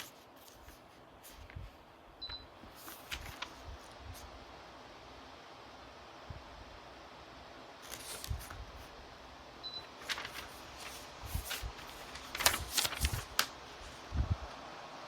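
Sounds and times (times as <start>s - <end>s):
clicks and rustles: 10.0s - 13.6s.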